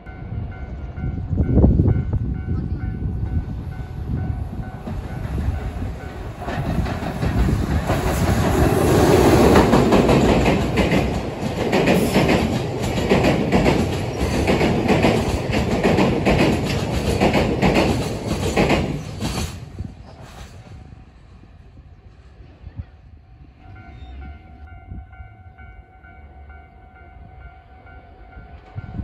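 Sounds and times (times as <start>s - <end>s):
electric train passing: 0.0s - 29.0s
wheels clicking over rail joints: 4.8s - 20.5s.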